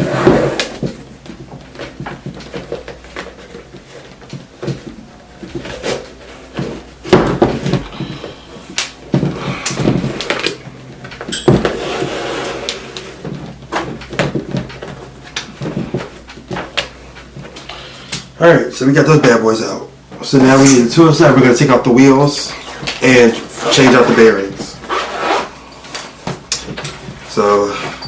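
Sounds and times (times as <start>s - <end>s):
roller skate knocking: 0.0s - 12.0s.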